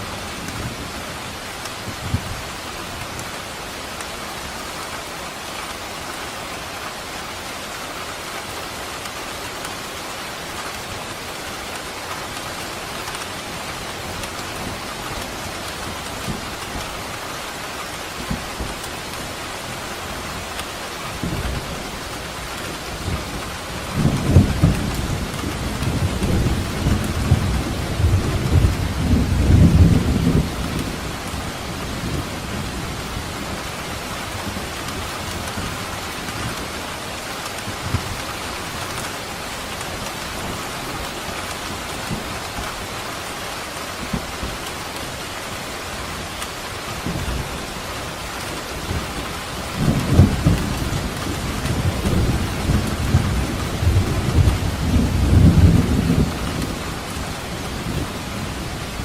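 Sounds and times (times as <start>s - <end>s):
steady rain: 0.0s - 59.0s.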